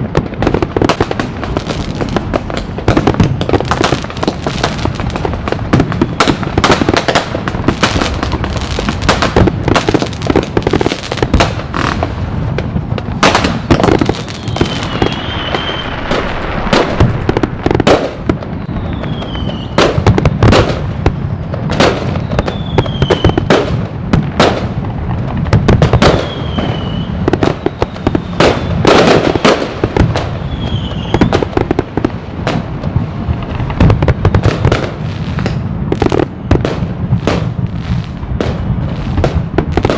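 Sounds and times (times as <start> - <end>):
firecracker pops crackling: 0.0 - 39.9
fireworks bangs: 0.0 - 39.9
falling firework whistles: 13.2 - 23.6, 25.7 - 29.6, 30.2 - 31.6.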